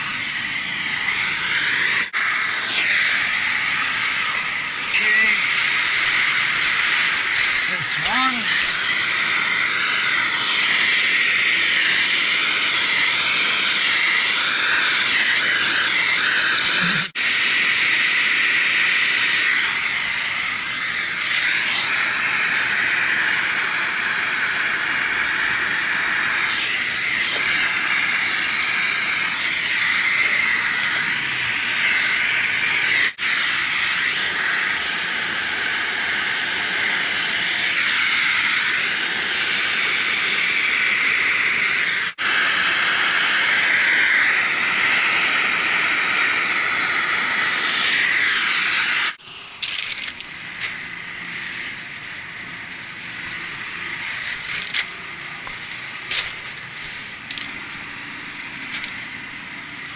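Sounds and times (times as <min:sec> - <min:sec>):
torch flame hissing: 0:00.0 - 0:59.9.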